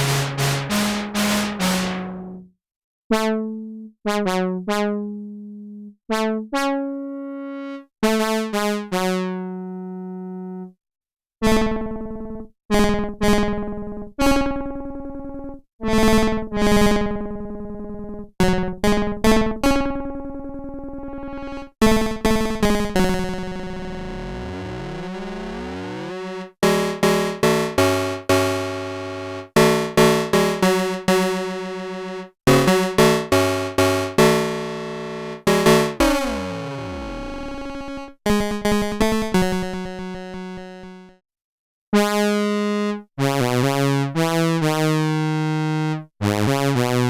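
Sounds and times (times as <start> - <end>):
analog synthesizer notes: 0.0 - 2.4, 22.7 - 38.0.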